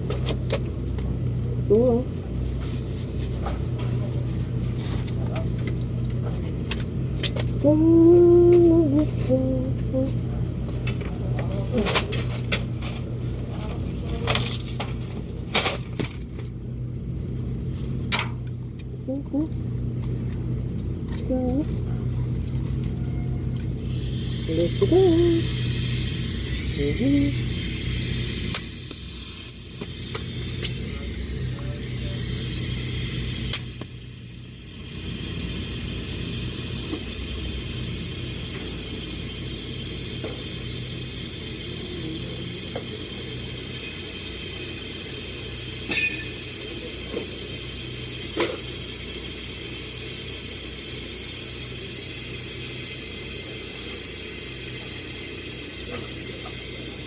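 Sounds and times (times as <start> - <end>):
welding arc hiss: 23.6 - 57.0.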